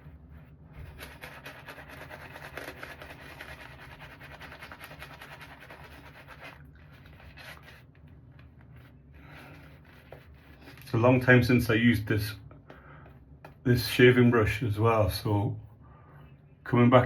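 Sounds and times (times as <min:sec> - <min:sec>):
shaving brush scrubbing lather: 0:00.8 - 0:08.0.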